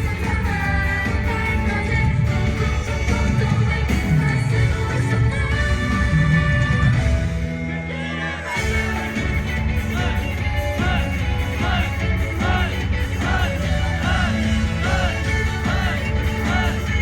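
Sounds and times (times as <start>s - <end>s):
crowd yelling: 0.0s - 17.0s
live rock band with singing: 0.0s - 17.0s.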